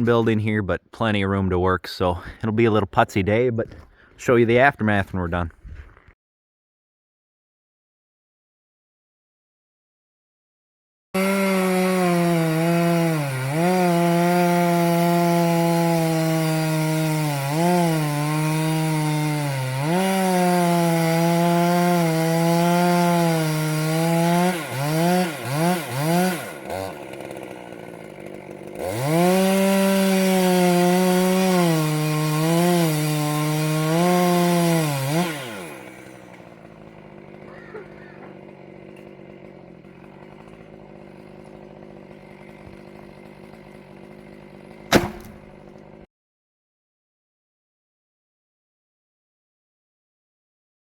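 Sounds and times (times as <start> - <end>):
chainsaw cutting wood: 11.2 - 46.1
chainsaw idling: 11.2 - 46.1.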